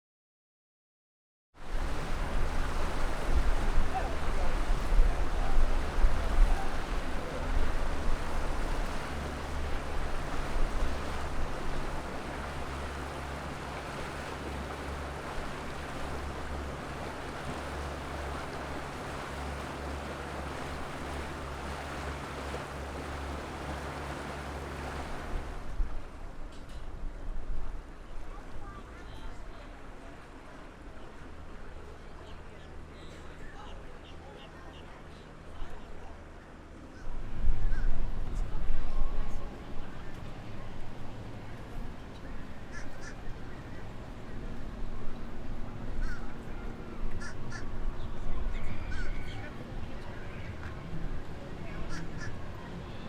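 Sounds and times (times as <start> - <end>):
wind buffeting microphone: 1.7 - 23.8, 37.0 - 53.0.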